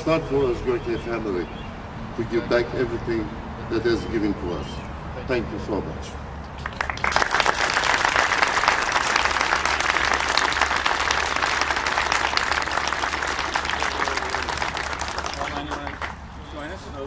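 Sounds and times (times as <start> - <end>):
audience applauding: 6.6 - 16.3.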